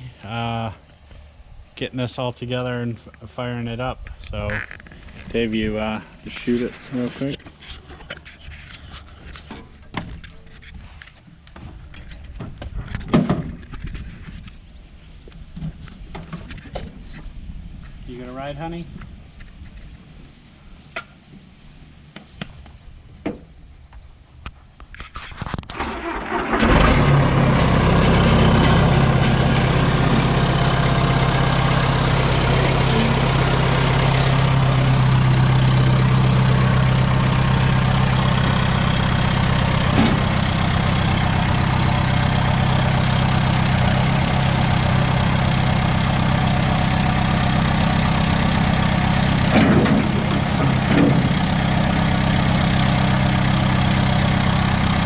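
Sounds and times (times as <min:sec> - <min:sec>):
tractor engine starting and idling: 0:25.7 - 0:55.0.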